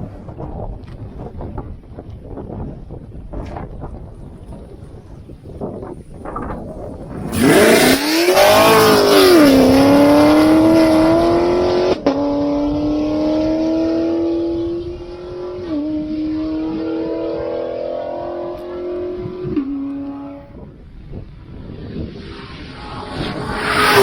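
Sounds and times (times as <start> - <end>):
car engine accelerating hard: 7.0 - 20.7, 21.4 - 24.0.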